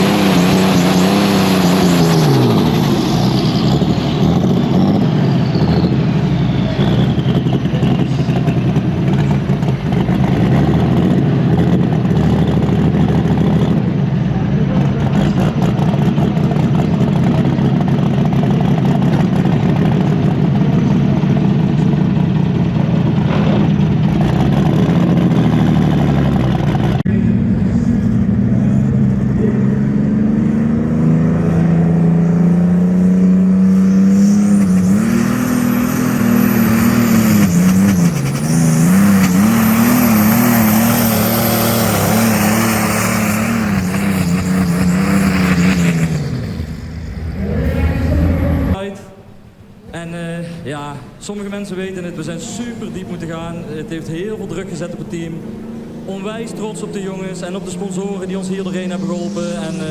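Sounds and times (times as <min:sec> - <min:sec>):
tractor engine at high revs: 0:00.0 - 0:48.8, 0:52.3 - 0:59.9.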